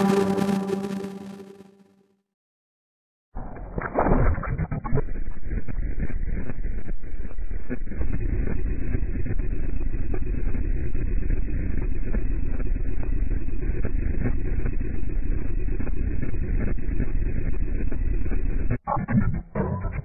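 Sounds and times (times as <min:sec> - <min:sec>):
distorted rumbling noise: 0:00.0 - 0:01.6, 0:03.4 - 0:20.0.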